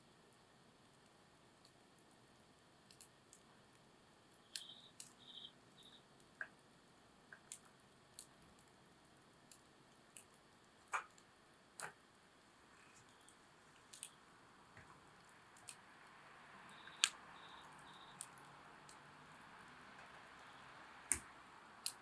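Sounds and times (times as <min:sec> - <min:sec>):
campfire crackling and popping: 0:09.5 - 0:16.0, 0:16.6 - 0:22.0.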